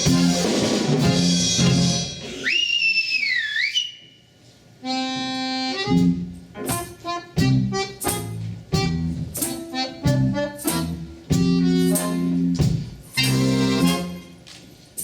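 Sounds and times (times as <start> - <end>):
accordion playing chords: 0.0 - 2.2, 4.8 - 14.4.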